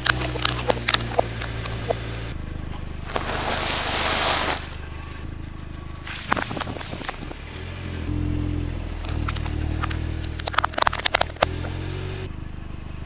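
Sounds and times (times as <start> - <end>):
car engine running: 0.0 - 13.0
rushing noise: 3.1 - 4.8
sharp cracks and snaps: 9.1 - 11.8.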